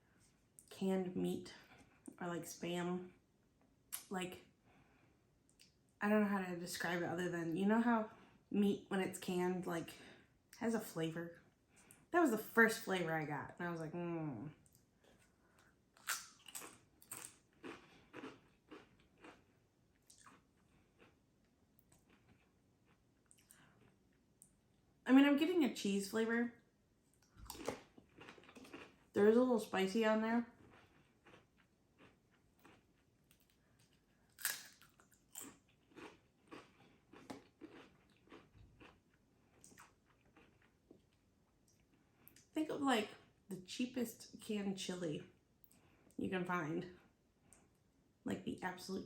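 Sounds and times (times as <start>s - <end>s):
crisps crunching while chewed: 16.0s - 21.2s, 21.8s - 24.1s, 27.2s - 29.1s, 30.4s - 42.5s.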